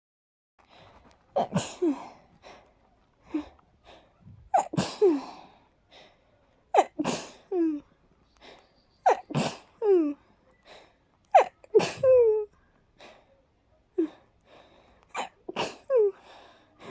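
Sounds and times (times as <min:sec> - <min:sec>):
quick breaths: 0:00.6 - 0:16.9
person sneezing: 0:01.4 - 0:02.1, 0:04.5 - 0:05.5, 0:06.8 - 0:07.8, 0:09.0 - 0:10.1, 0:11.3 - 0:12.5, 0:15.1 - 0:16.2.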